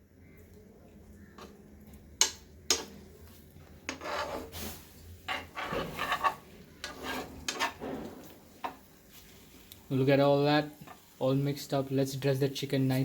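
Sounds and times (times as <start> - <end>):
spatula scraping pan: 3.8 - 9.2.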